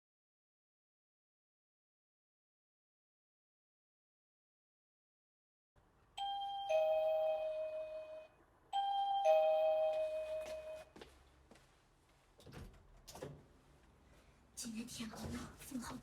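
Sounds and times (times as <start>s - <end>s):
doorbell chiming ding-dong: 6.2s - 10.9s.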